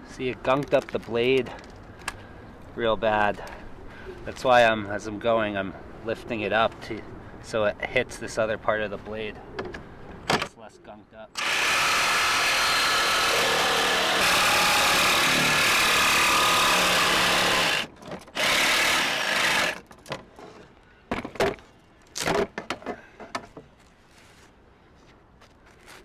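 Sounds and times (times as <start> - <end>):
electric saw cutting plastic: 11.4 - 19.8.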